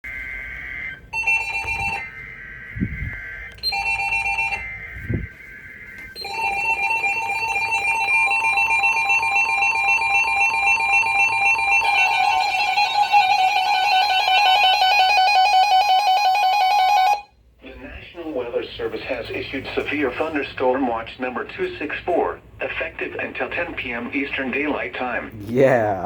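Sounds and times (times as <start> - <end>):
screeching data bursts: 0.1 - 6.7
two-tone alert signal: 0.1 - 15.1.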